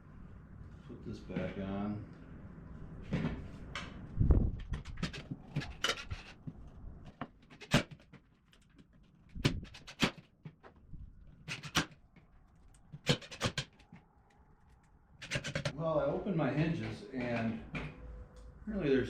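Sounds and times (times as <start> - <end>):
hardware clicking and knocking: 4.6 - 14.1, 15.2 - 15.7.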